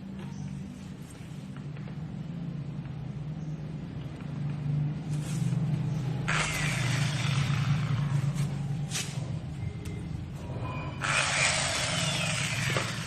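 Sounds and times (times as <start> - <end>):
electric sander humming: 6.3 - 8.0, 11.0 - 13.0.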